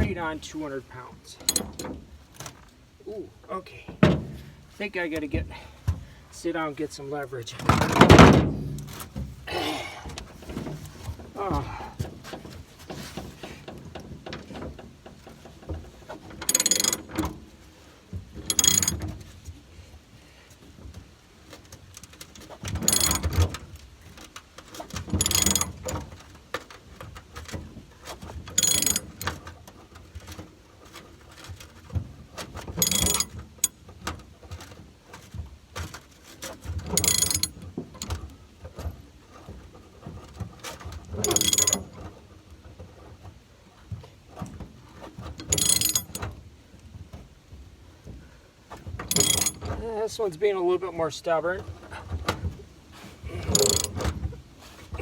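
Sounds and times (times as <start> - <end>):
faint clicks and creaks: 0.0 - 6.1, 6.7 - 55.0
rapid ratchet clicking: 16.5 - 17.1, 18.5 - 19.0, 22.8 - 23.3, 25.1 - 25.9, 28.6 - 29.3, 32.8 - 33.3, 37.0 - 37.6, 41.3 - 41.9, 45.5 - 46.2, 49.1 - 49.6, 53.5 - 54.0.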